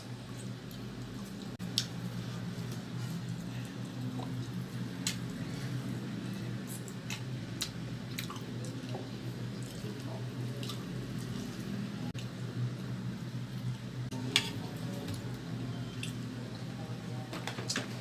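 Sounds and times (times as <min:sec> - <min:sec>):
steady low hum: 0:00.0 - 0:18.0
wet chewing with mouth clicks: 0:06.6 - 0:11.0.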